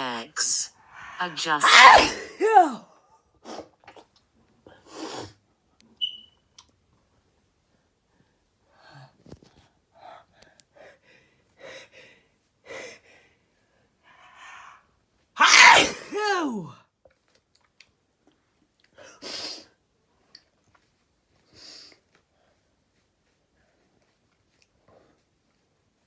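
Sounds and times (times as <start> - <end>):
person sneezing: 1.5 - 2.8, 15.4 - 16.7
short high squeak: 6.0 - 6.4.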